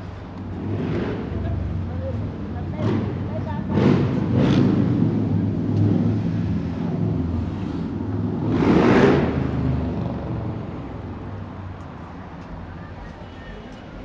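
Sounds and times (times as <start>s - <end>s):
road noise rumble: 0.0s - 14.0s.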